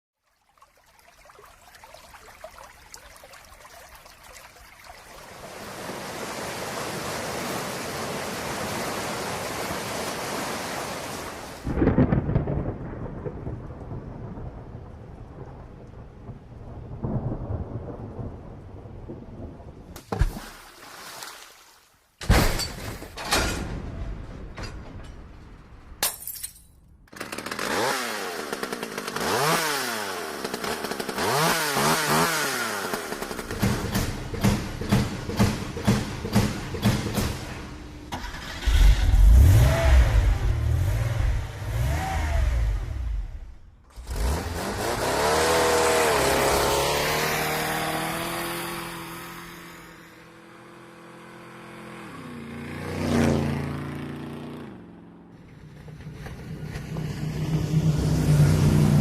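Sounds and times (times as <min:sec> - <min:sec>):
motorcycle-like engine revving: 0:27.2 - 0:37.3, 0:38.2 - 0:59.0.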